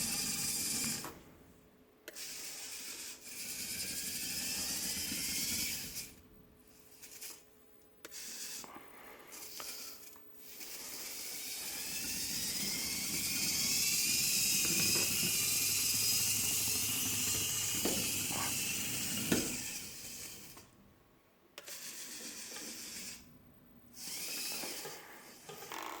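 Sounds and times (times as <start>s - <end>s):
servo motors whining: 24.0s - 26.0s.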